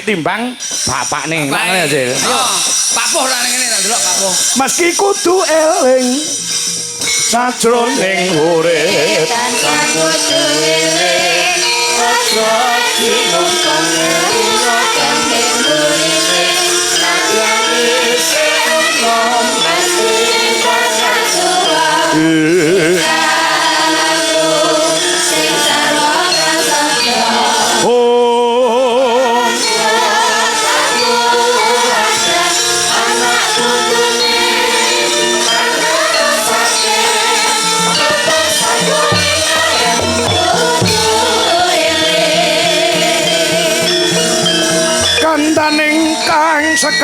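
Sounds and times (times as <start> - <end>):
live band playing: 0.0 - 28.1, 29.2 - 47.0
live band music: 29.2 - 47.0.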